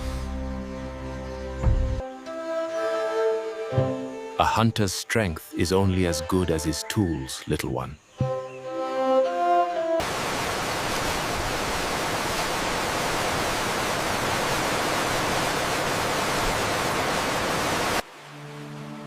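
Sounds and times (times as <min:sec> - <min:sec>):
background music with held notes: 0:00.0 - 0:10.0, 0:18.1 - 0:19.0.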